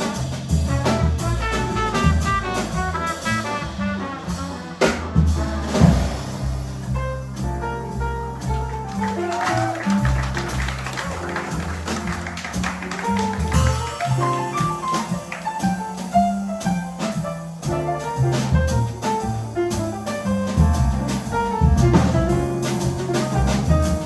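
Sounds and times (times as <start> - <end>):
double bass line: 0.0 - 24.0
piano: 0.0 - 24.0
trumpet: 0.6 - 6.4.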